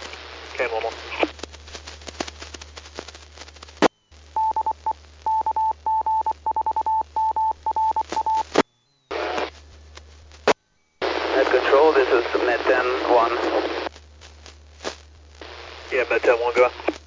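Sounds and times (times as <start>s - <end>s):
burst of static: 0.0s - 6.4s, 7.6s - 17.0s
radio hiss and clicks: 0.0s - 6.8s, 7.7s - 17.0s
morse code beeps: 4.4s - 8.4s.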